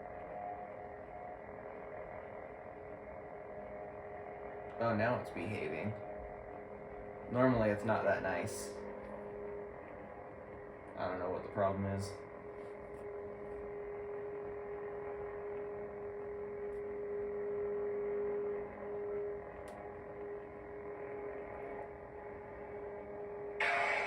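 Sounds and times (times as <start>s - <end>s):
lightsaber electronic hum: 0.0s - 24.0s.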